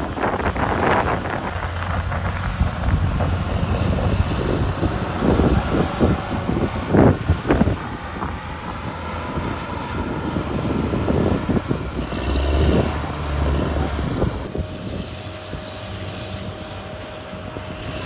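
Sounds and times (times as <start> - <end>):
thin high squeal: 0.0 - 14.3
bulldozer diesel engine under load: 0.0 - 18.0
steel tracks clanking: 0.0 - 18.0.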